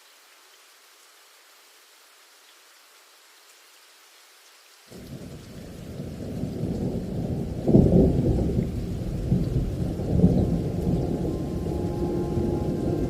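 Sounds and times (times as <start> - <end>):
waterfall roaring: 11.4 - 13.0.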